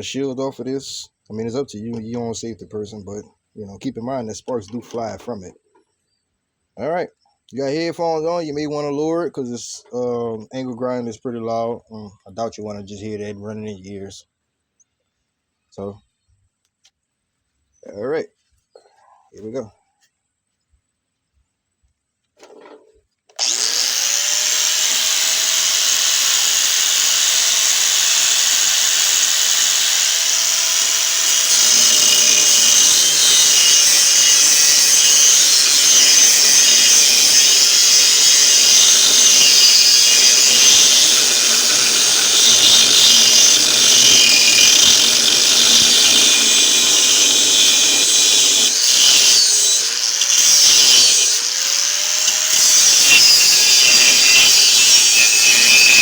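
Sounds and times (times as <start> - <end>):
angle grinder cutting steel: 23.4 - 56.0.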